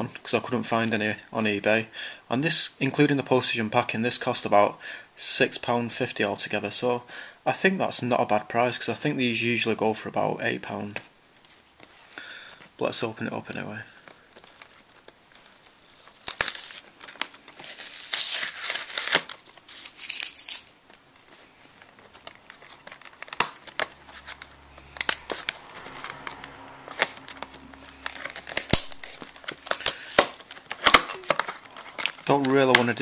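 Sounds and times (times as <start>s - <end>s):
packaging crinkling and tearing: 13.9s - 33.0s.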